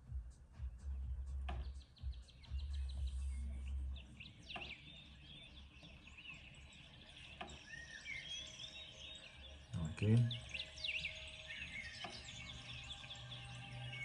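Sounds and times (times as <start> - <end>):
low rumble: 0.0 - 4.2
small birds chirping: 0.0 - 14.0.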